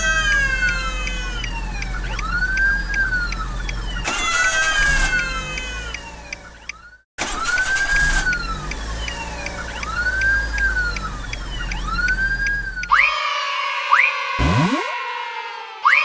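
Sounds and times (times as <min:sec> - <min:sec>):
cartoon siren wail: 0:00.0 - 0:06.0, 0:09.8 - 0:16.0
steady ticking: 0:00.4 - 0:06.9, 0:08.3 - 0:13.1
quick upward whoops: 0:14.4 - 0:15.0.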